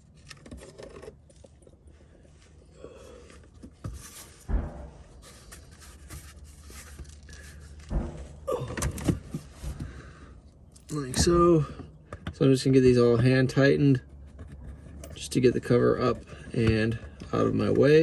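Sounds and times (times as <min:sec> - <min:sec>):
plastic cover scraping and rustling: 0:05.2 - 0:07.8.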